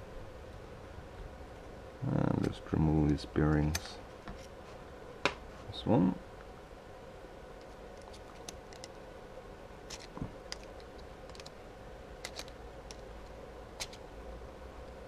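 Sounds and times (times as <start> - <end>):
faint steady hum: 0.0 - 15.0
metal parts and tools clicking: 12.2 - 13.0.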